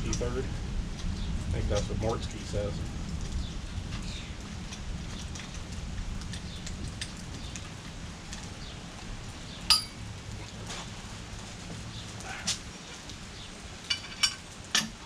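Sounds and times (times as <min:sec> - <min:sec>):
low steady rumble: 0:00.0 - 0:14.8
ringing metal clink: 0:09.7 - 0:10.0.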